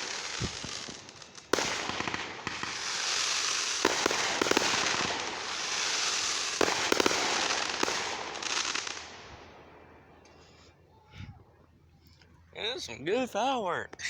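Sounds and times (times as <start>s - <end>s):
fireworks bangs: 0.0s - 9.6s
fireworks crackling: 0.0s - 10.5s.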